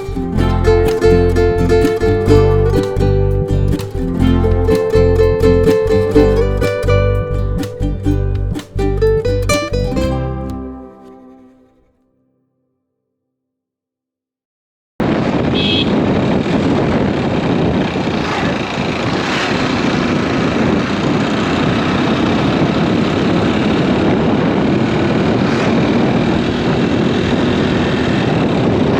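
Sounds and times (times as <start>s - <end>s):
moving vehicle noise: 15.6s - 28.9s.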